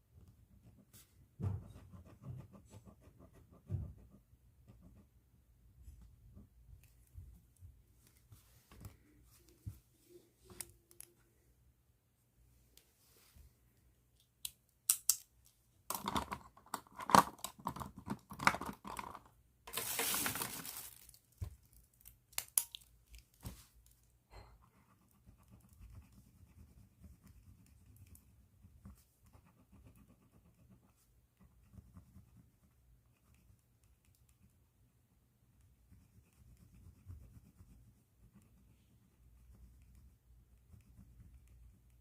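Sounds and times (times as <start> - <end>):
pen scratching on paper: 0.2 - 5.2, 24.5 - 34.6, 35.6 - 42.0
plastic bag crinkling: 19.7 - 23.4.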